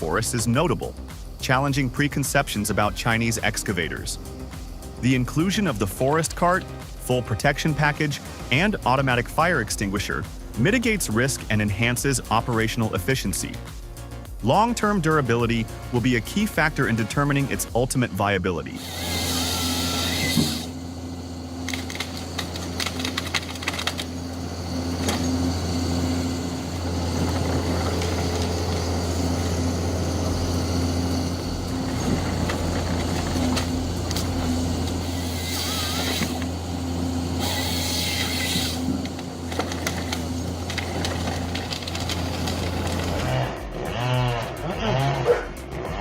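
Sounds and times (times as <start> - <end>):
heavy machine engine humming: 15.6 - 44.3
sharp clicks and cracks: 21.6 - 24.1, 39.0 - 43.5.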